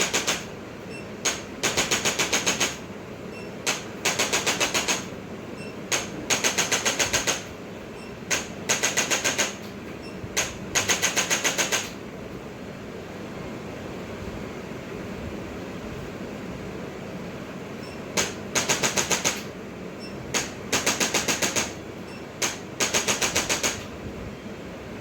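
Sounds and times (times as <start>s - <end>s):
mechanical device rapid clicks: 0.0s - 0.5s, 1.2s - 2.8s, 3.7s - 5.1s, 5.9s - 7.5s, 8.3s - 9.7s, 10.4s - 12.0s, 18.2s - 19.5s, 20.3s - 21.8s, 22.4s - 23.9s.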